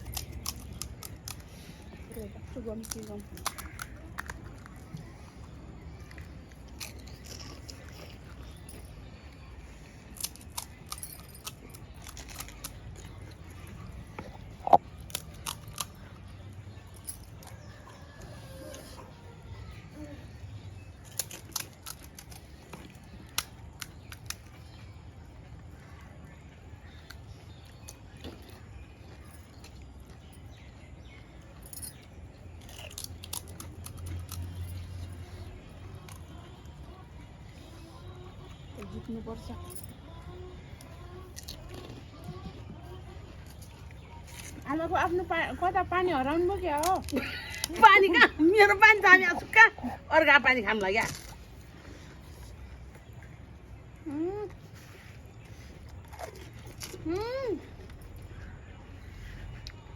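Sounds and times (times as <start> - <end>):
crisp shells crunching when chewed: 0.0 - 19.0, 20.5 - 25.0, 26.8 - 37.1, 37.9 - 44.7, 54.8 - 58.5
small sharp clicks and crackles: 20.9 - 24.8.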